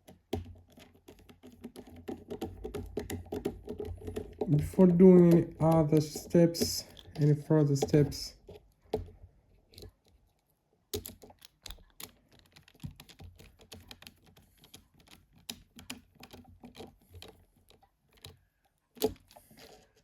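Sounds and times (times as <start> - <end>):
small clicks and taps of screwdriver: 11.0 - 20.0.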